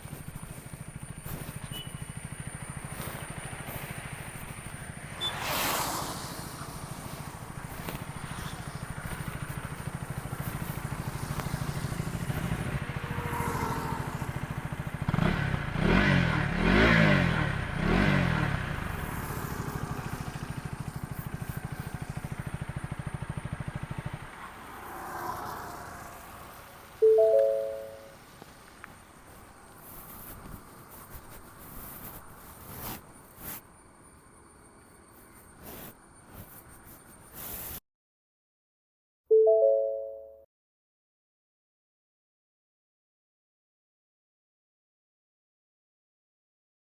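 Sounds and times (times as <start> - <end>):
motorcycle engine revving: 0.0 - 27.0, 27.7 - 33.6.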